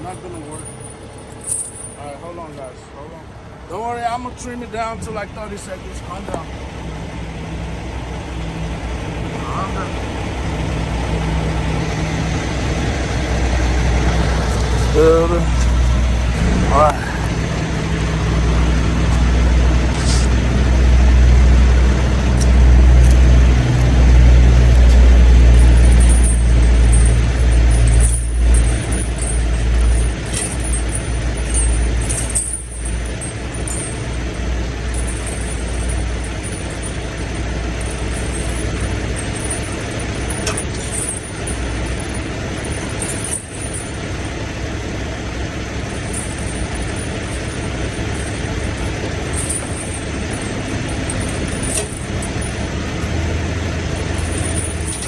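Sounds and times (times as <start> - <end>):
diesel truck engine rumbling: 0.0 - 55.0.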